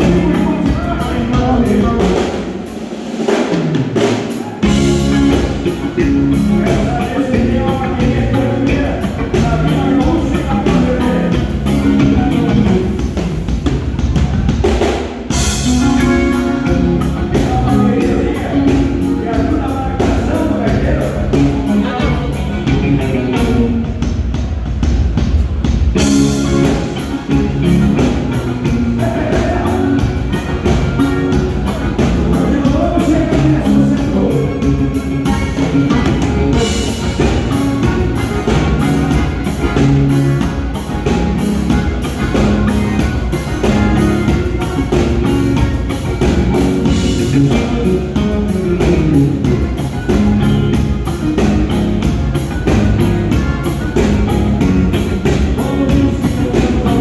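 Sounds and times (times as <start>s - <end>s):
band playing: 0.0s - 57.0s
drum kit beat: 0.0s - 57.0s.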